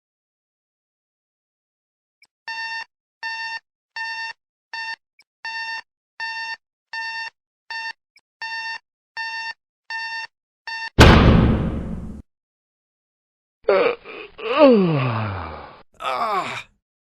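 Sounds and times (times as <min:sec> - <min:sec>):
alarm clock beeping: 0:02.5 - 0:10.9
sudden loud crash: 0:11.0 - 0:12.2.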